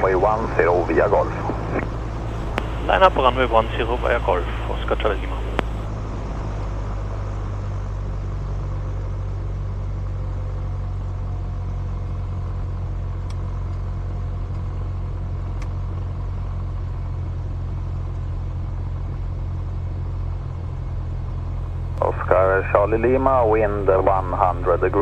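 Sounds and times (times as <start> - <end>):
aircraft piston engine droning: 0.0 - 5.9, 21.7 - 25.0
faint clicks: 0.0 - 5.9, 21.7 - 25.0.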